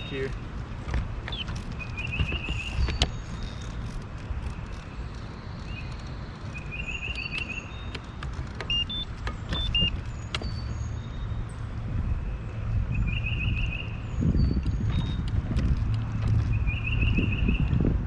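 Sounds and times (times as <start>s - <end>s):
electric boat motor humming: 0.0s - 12.9s
birds chirping and trilling: 1.2s - 17.9s.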